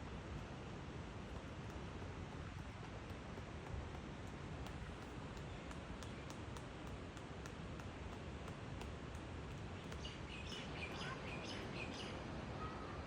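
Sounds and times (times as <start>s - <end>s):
steady background hiss: 0.0s - 13.0s
light repeated ticks: 0.2s - 10.6s
small birds chirping: 9.5s - 13.0s.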